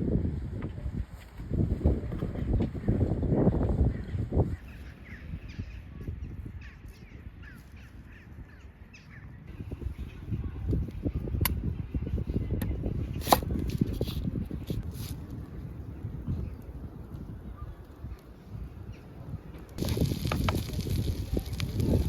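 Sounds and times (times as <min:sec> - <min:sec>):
wind rumble on microphone: 0:00.0 - 0:22.0.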